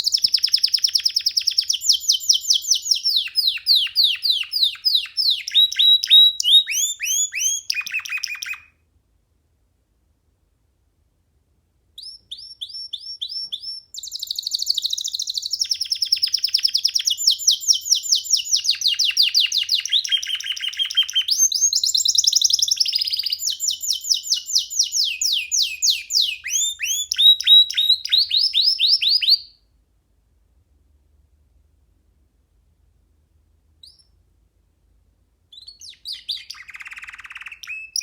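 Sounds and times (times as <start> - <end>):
canary singing trills: 0.0 - 8.8, 12.0 - 29.6, 35.5 - 38.0.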